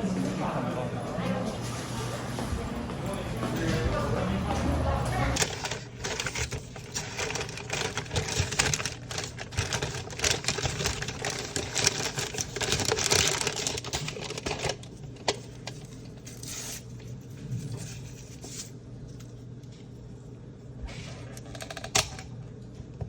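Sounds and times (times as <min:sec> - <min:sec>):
steady low hum: 0:13.6 - 0:23.0.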